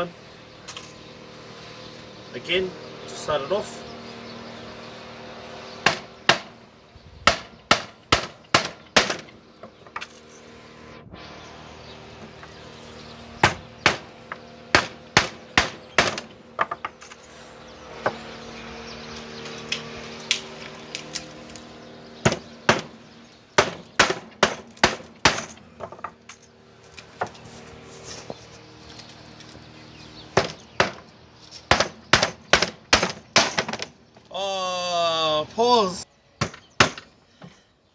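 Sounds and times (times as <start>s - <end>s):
hammer striking nails into wood: 5.8s - 6.5s, 7.2s - 9.3s, 13.4s - 16.9s, 22.2s - 23.0s, 23.6s - 25.9s, 30.4s - 31.0s, 31.7s - 33.9s, 36.4s - 37.1s.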